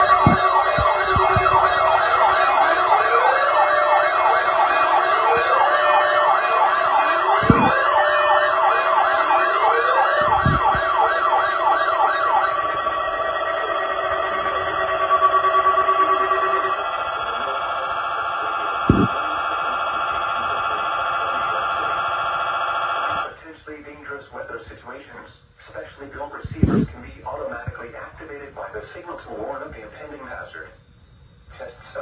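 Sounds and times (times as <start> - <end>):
low thumps: 0.0 - 2.8, 7.4 - 8.0, 10.0 - 11.2
siren wail: 0.0 - 23.3
siren yelp: 0.0 - 23.3.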